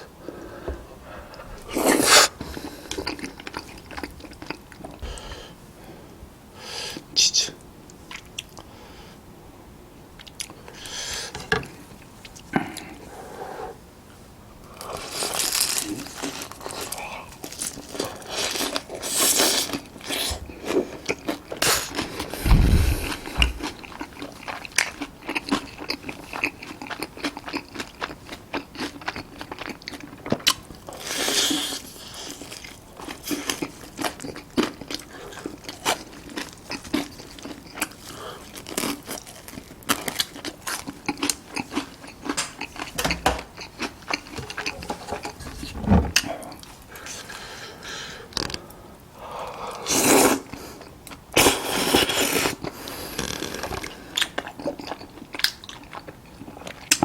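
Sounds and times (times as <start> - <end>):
person chewing crunchy food: 1.3 - 5.4, 14.7 - 45.5, 49.9 - 57.0
low thump: 22.4 - 23.6.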